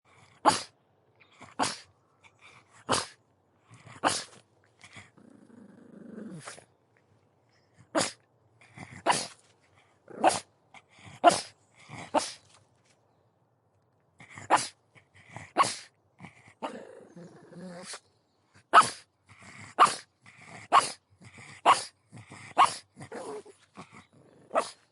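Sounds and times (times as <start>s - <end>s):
dog growling: 1.3s - 6.7s, 7.6s - 12.4s, 14.2s - 18.0s, 19.3s - 24.9s.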